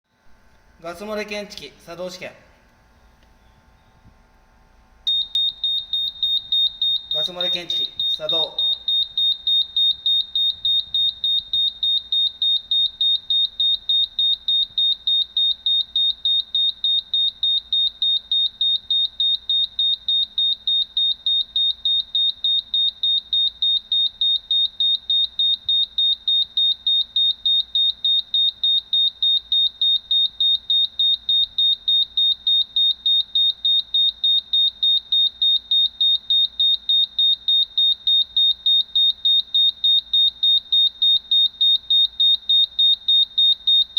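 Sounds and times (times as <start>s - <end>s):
rapid high-pitched alarm beeps: 5.1s - 43.9s.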